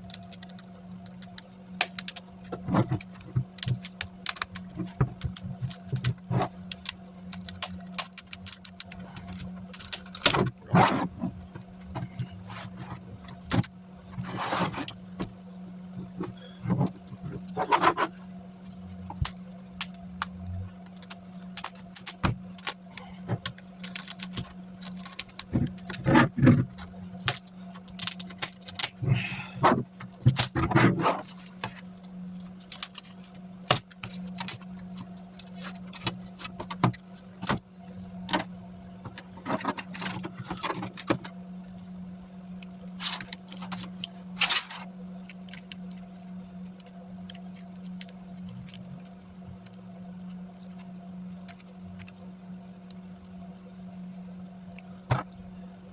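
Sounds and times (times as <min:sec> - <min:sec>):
plastic and metal clicks and rattles: 0:00.0 - 0:10.6, 0:16.8 - 0:41.9
steady low hum: 0:00.0 - 0:55.9.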